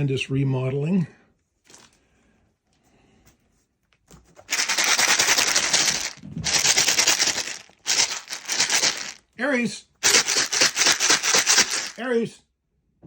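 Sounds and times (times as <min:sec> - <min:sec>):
kibble rattling in a box: 0:04.3 - 0:09.2, 0:10.0 - 0:12.1.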